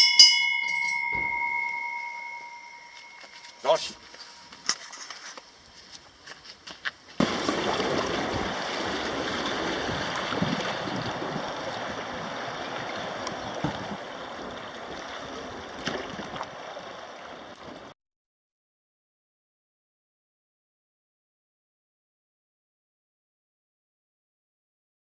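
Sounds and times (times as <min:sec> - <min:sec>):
river water rushing: 0:07.2 - 0:17.9
wind noise on microphone: 0:07.2 - 0:17.9.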